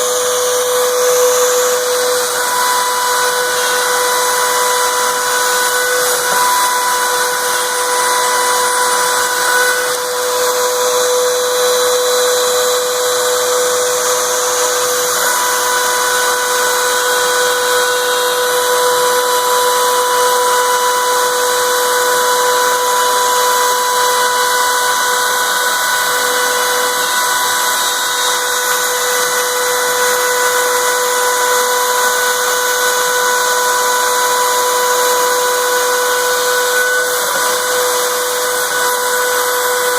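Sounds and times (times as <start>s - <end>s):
vacuum hissing: 0.0s - 15.4s
router spindle whining: 0.0s - 39.9s.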